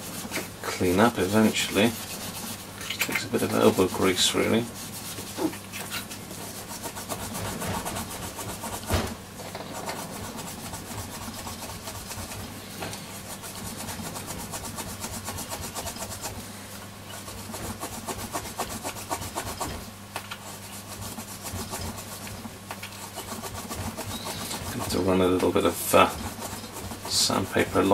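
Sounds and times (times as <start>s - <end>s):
scratchy rubbing on metal: 0.0s - 9.0s, 9.6s - 12.5s, 13.2s - 16.4s, 17.1s - 27.9s
knock: 8.9s - 9.2s.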